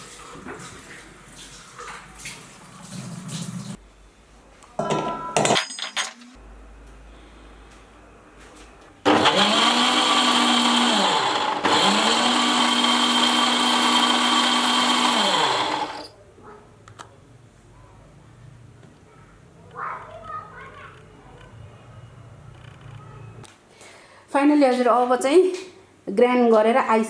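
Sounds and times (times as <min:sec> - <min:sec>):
mixer grinder motor grinding: 0:09.1 - 0:16.1.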